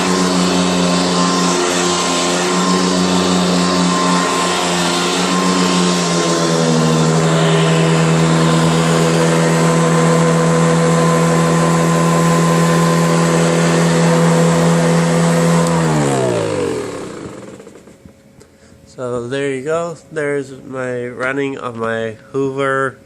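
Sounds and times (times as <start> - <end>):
vacuum cleaner motor whine: 0.0 - 18.2.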